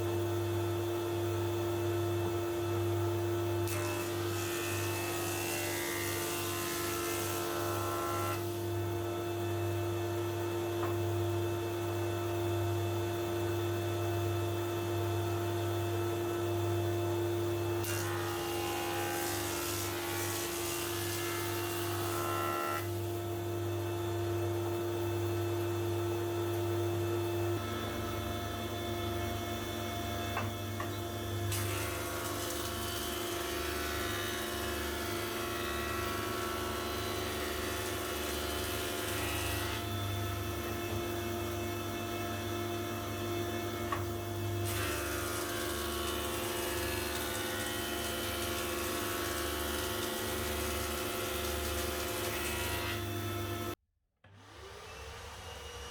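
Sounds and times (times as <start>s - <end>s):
woodworking machine motor hum: 0.2s - 12.6s, 13.4s - 55.9s.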